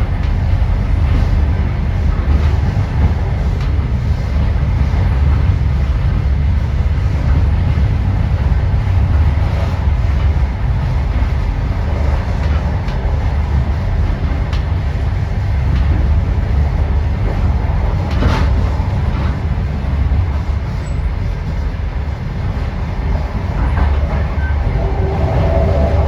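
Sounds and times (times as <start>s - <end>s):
train rumbling: 0.0s - 26.0s.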